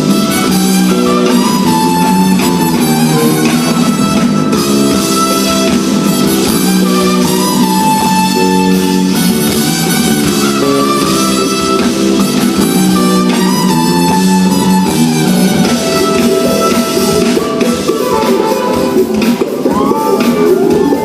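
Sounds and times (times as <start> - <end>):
live band instrumental music: 0.0 - 21.0.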